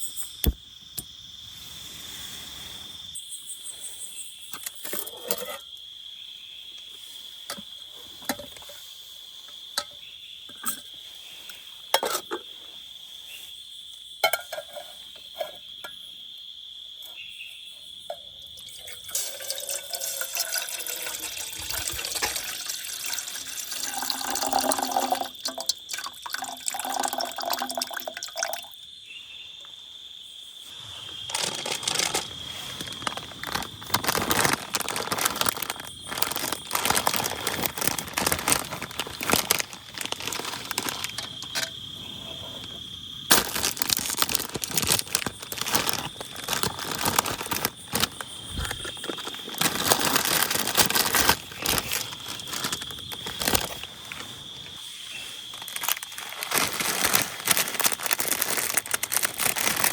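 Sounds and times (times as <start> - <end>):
water running and dripping: 18.6 - 28.8.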